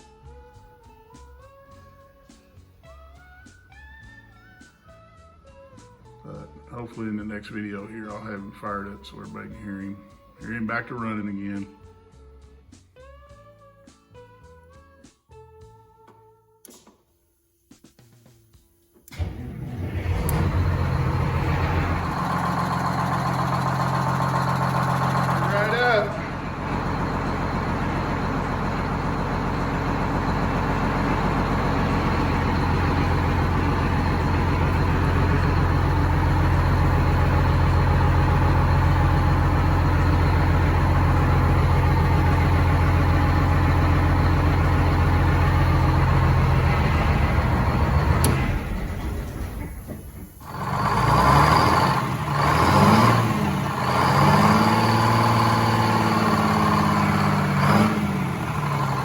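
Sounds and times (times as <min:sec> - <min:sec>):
diesel engine running and revving: 0:19.1 - 0:59.0.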